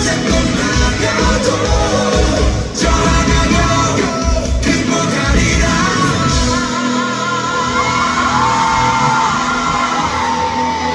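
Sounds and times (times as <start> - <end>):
live rock band playing: 0.0 - 10.9
person singing: 0.0 - 10.9
singer holding long high note: 6.0 - 10.9.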